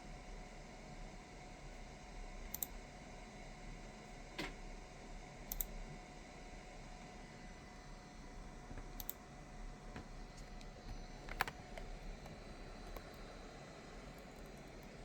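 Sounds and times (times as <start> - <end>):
faint steady hum: 0.0 - 15.0
mechanical keyboard clicks: 2.5 - 2.7, 10.8 - 13.3.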